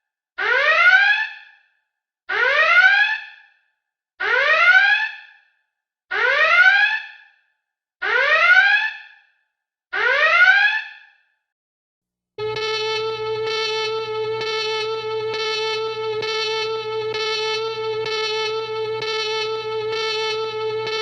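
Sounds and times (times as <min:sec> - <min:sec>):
alert klaxon rising whoop: 0:12.4 - 0:21.0.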